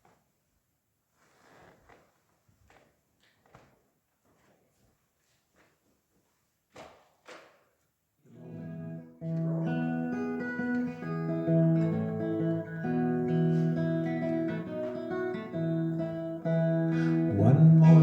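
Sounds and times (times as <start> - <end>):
acoustic guitar strumming chords: 8.3 - 18.0.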